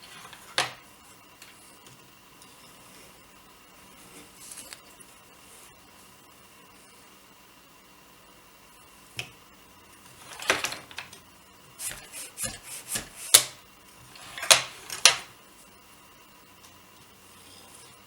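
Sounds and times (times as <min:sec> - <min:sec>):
wooden loom clacking: 0:11.8 - 0:13.6.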